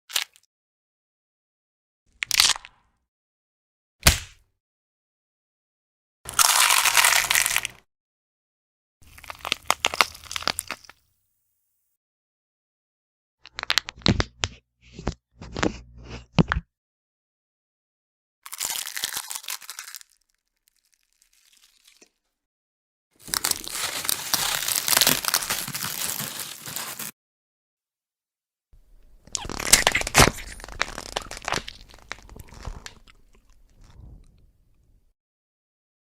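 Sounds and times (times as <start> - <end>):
bones cracking and snapping: 9.1 - 11.0, 23.2 - 27.1, 29.2 - 33.6
bone crunching: 23.2 - 27.1, 29.3 - 33.5.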